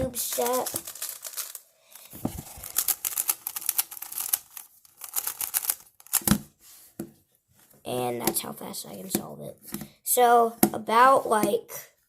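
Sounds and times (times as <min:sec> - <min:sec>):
puzzle cube plastic clicks: 0:02.5 - 0:06.4.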